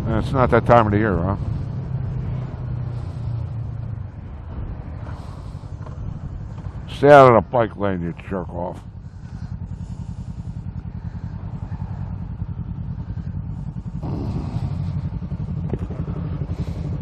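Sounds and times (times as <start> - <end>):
motorcycle engine running: 0.0 - 17.0.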